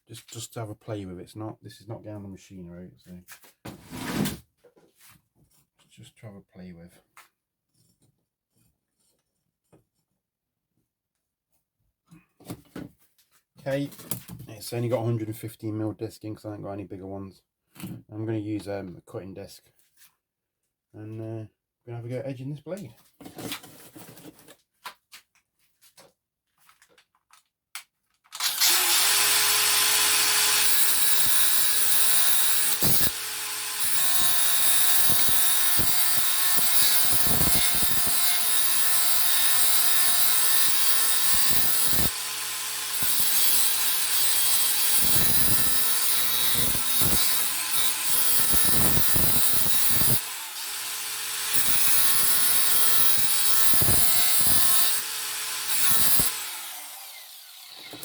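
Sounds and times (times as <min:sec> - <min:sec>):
angle grinder grinding steel: 0:28.4 - 0:58.0.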